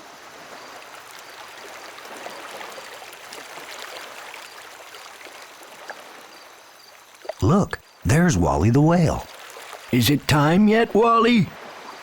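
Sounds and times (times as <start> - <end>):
sea water lapping: 8.2 - 12.0.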